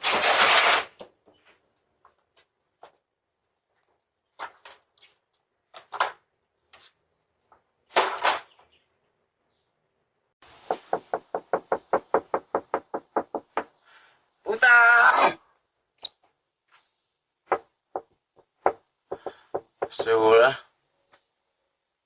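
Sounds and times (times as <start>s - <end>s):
knocking on a door: 10.7s - 13.7s, 17.5s - 20.2s.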